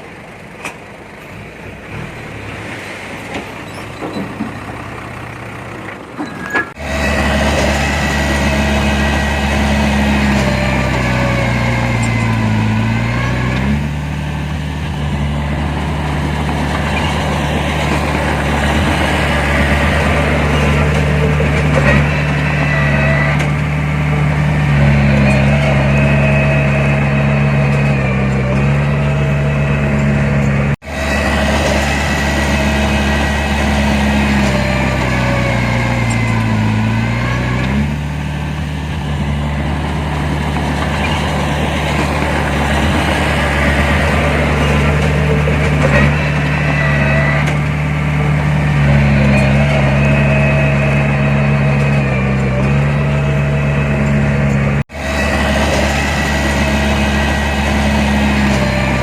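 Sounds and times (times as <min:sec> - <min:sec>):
heavy machinery diesel engine: 0:00.0 - 0:59.0.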